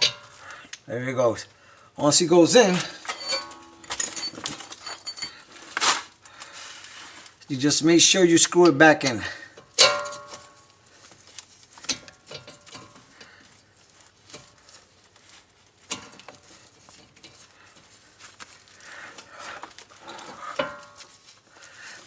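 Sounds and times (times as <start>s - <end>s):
light scraping of hand tools: 2.5s - 7.4s.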